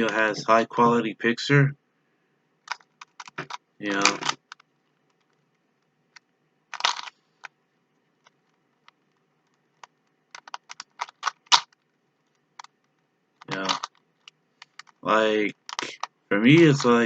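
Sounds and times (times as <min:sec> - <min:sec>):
puzzle cube layers clicking: 0:02.7 - 0:05.4, 0:06.2 - 0:07.2, 0:08.2 - 0:17.0.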